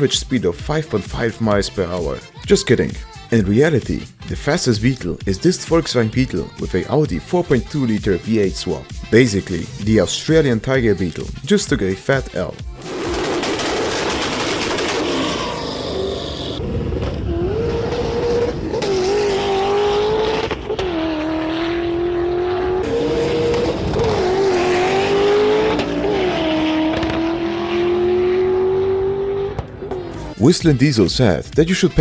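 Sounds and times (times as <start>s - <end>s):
car engine accelerating through gears: 12.7s - 30.4s.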